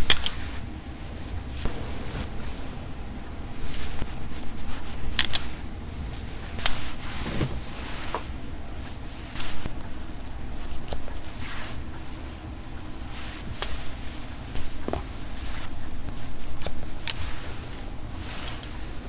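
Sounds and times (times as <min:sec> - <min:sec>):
hair rustling: 0:00.3 - 0:19.0
scissors snipping hair: 0:16.2 - 0:17.2.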